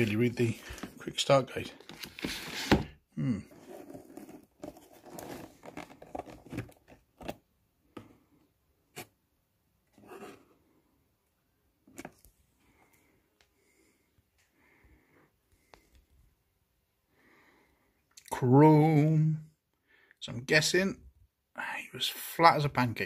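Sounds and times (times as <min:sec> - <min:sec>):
packaging rustling and crinkling: 0:03.7 - 0:07.4.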